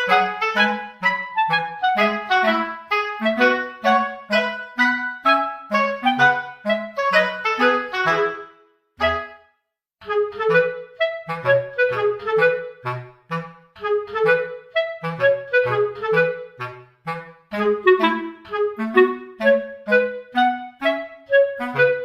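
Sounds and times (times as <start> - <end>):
instrumental melody over bass line: 0.0 - 22.0.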